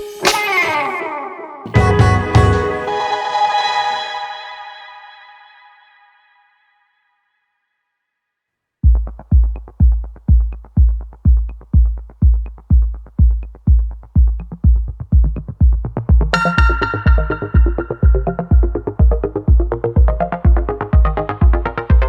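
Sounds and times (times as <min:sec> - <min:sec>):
synth chords: 0:01.7 - 0:05.6, 0:15.8 - 0:22.0
heavy kick drum beating: 0:01.8 - 0:02.7, 0:08.8 - 0:22.0.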